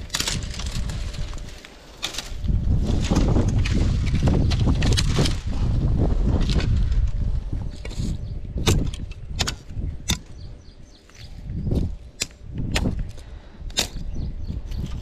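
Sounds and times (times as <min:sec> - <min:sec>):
wind rumble on microphone: 0:00.0 - 0:01.6, 0:02.2 - 0:15.0
blade cracking wooden sticks: 0:00.0 - 0:05.5, 0:12.2 - 0:14.2.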